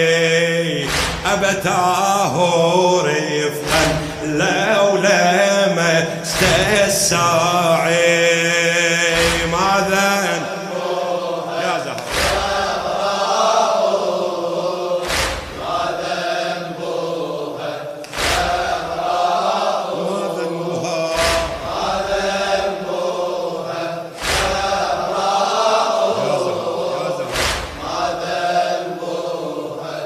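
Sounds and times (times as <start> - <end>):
men chanting mourning refrain: 0.0 - 30.0
heavy beat: 0.8 - 2.4, 3.6 - 4.7, 6.1 - 7.9, 9.1 - 10.5, 11.7 - 13.3, 15.0 - 16.2, 18.1 - 19.4, 21.0 - 22.9, 24.2 - 28.4.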